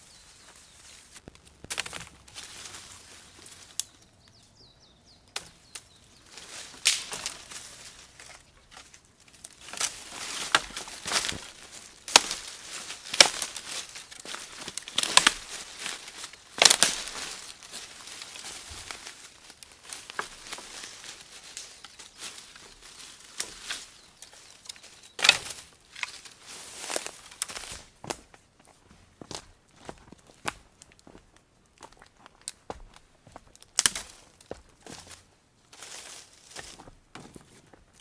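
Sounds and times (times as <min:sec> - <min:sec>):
dry leaves and twigs crunching: 0:00.0 - 0:38.0
twigs snapping: 0:00.5 - 0:04.4, 0:05.3 - 0:28.2, 0:33.5 - 0:35.2.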